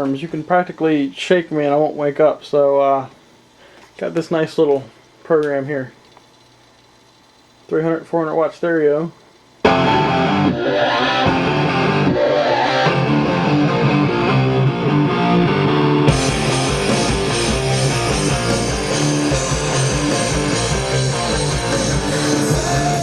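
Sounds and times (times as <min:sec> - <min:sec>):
loud rock music: 0:09.7 - 0:23.0.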